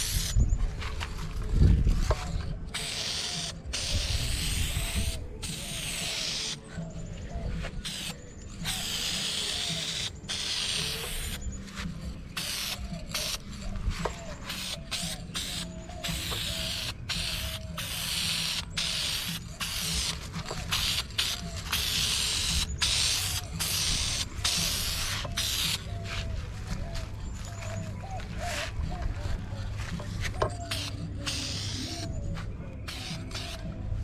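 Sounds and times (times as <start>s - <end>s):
background music: 0.0s - 34.0s
aerosol spray can hissing: 2.8s - 6.7s, 7.8s - 11.4s, 12.4s - 13.4s, 14.4s - 25.9s, 30.7s - 32.2s, 32.9s - 33.6s.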